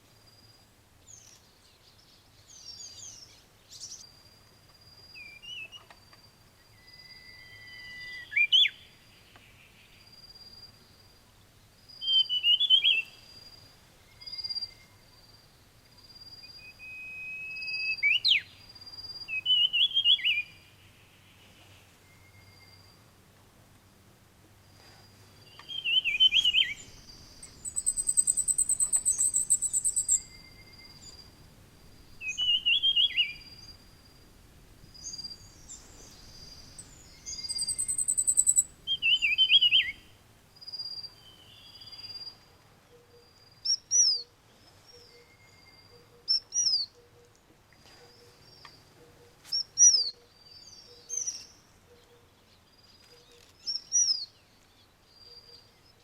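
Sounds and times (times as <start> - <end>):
steady whistled bird note: 25.6 - 31.4, 32.0 - 33.9
birds warbling and trilling: 25.6 - 34.3, 35.0 - 40.1.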